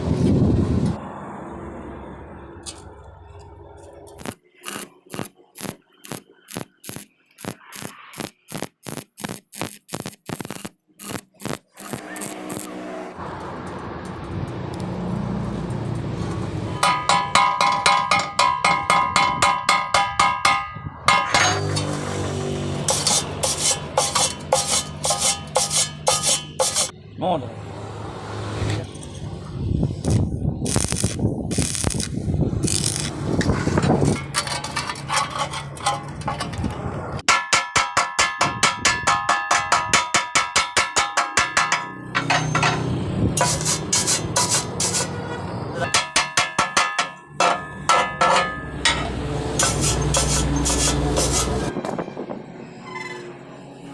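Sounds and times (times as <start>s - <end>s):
hammer striking ringing steel tubing: 16.8s - 22.0s, 37.3s - 42.9s, 45.8s - 50.8s
scraping and rubbing on metal: 16.8s - 26.9s, 30.0s - 37.2s, 37.8s - 51.8s.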